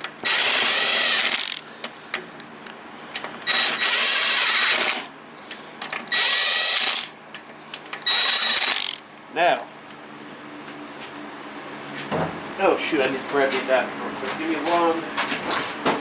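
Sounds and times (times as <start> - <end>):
cordless drill spinning: 0.2 - 1.7, 3.4 - 5.2, 6.1 - 7.1, 8.0 - 9.0.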